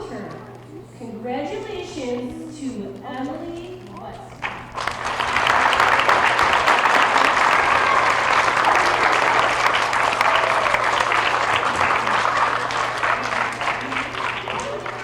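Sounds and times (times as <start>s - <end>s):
audience clapping: 3.7s - 15.0s.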